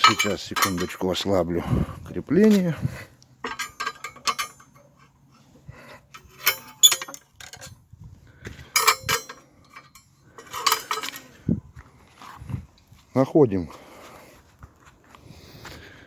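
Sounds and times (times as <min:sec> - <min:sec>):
metal clinking and rattling: 0:00.0 - 0:01.3, 0:03.4 - 0:05.4, 0:06.0 - 0:07.8, 0:08.7 - 0:11.4.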